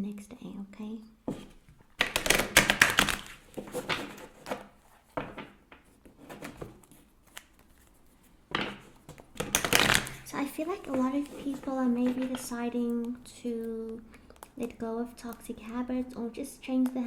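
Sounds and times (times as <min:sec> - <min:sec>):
cards being shuffled: 0:02.0 - 0:05.5, 0:06.1 - 0:15.4.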